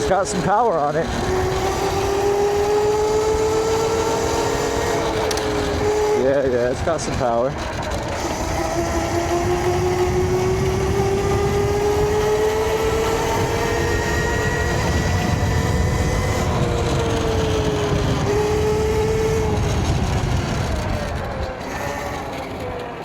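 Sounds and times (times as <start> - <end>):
electric motor whining: 0.0 - 23.0
wind: 0.0 - 23.0.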